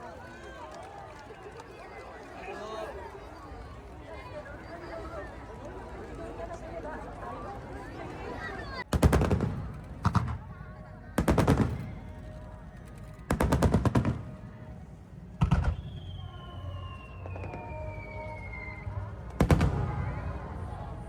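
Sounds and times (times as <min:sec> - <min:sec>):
fireworks bangs: 0:08.9 - 0:10.6, 0:11.2 - 0:18.0, 0:19.2 - 0:20.6
firework whistle falling in pitch: 0:15.5 - 0:19.1.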